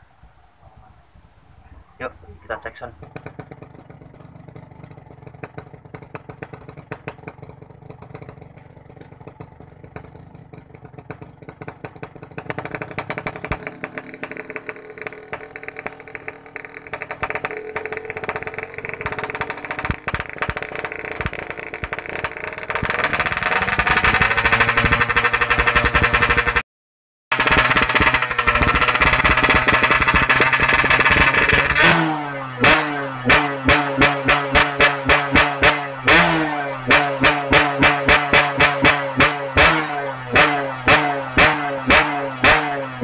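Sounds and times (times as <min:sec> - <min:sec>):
two-stroke motorcycle engine revving: 0:02.8 - 0:26.6, 0:27.3 - 0:43.0.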